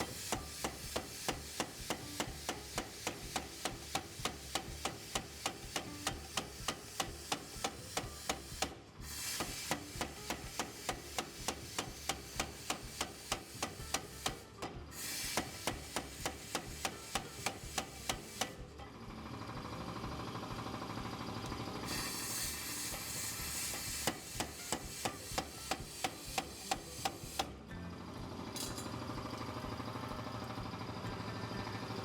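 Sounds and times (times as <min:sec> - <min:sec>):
hammer striking steel: 0:00.0 - 0:18.7, 0:21.9 - 0:27.5.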